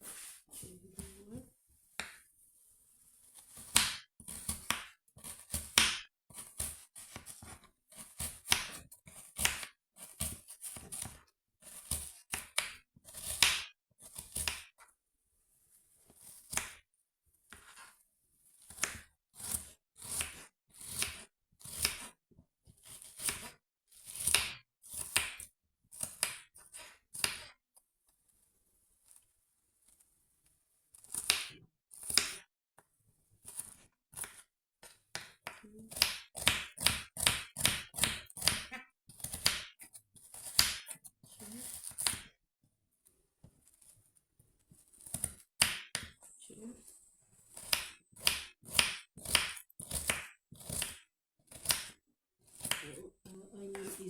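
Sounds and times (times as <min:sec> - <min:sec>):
knife cutting onion on board: 0:01.9 - 0:02.3, 0:03.3 - 0:14.9, 0:16.1 - 0:16.8, 0:17.5 - 0:18.0, 0:18.6 - 0:27.6, 0:30.9 - 0:32.5, 0:33.4 - 0:42.4, 0:44.7 - 0:46.3, 0:47.4 - 0:54.0.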